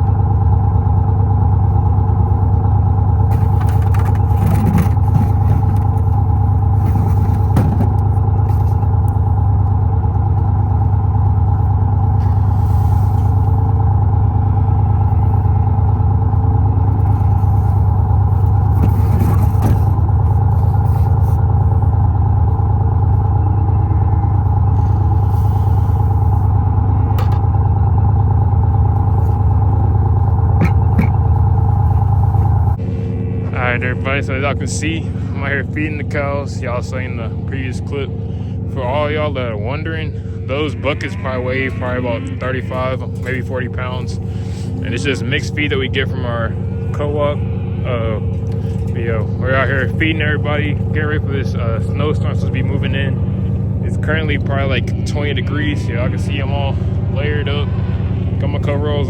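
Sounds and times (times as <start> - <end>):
vehicle engine humming: 0.0 - 59.0
short clatters and knocks: 3.3 - 9.0.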